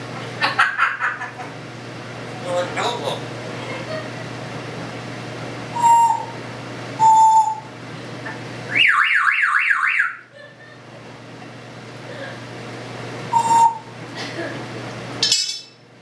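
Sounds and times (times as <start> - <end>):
parrot whistling beeps: 5.8 - 6.3, 7.0 - 7.7, 13.3 - 13.9
parrot mimicking car alarm siren: 5.8 - 6.4, 7.0 - 7.7, 8.7 - 10.3, 13.3 - 13.9.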